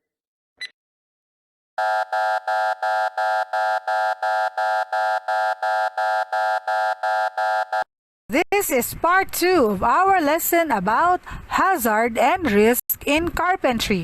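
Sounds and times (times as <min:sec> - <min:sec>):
alarm buzzer beeping rapidly: 0:01.8 - 0:07.9.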